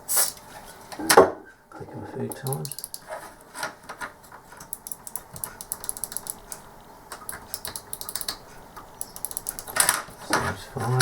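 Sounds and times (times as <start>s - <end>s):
mouse button micro switches clicking: 4.6s - 6.6s, 7.2s - 9.8s.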